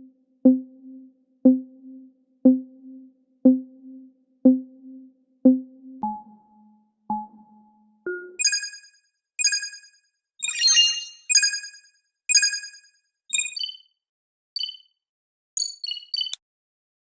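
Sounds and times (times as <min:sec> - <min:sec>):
bright ringtone-like chimes: 0:08.4 - 0:13.9
electronic jingle: 0:10.4 - 0:11.5
quick electronic beeps: 0:10.4 - 0:11.8, 0:15.6 - 0:16.4.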